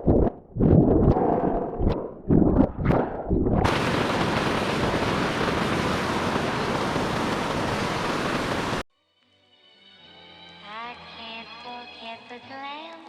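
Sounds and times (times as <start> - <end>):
river water rushing: 3.7 - 8.8.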